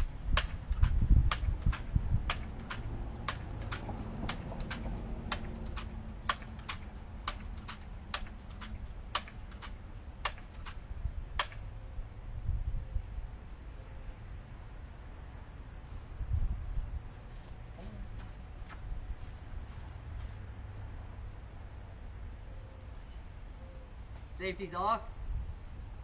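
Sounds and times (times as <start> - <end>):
pellet gun pump clacks: 0.4 - 10.8.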